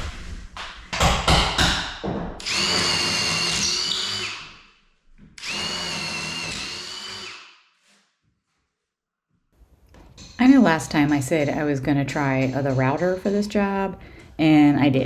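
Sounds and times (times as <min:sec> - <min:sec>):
sharp knocks: 0:00.6 - 0:02.4
power tool motor whine: 0:02.4 - 0:04.6, 0:05.4 - 0:07.5.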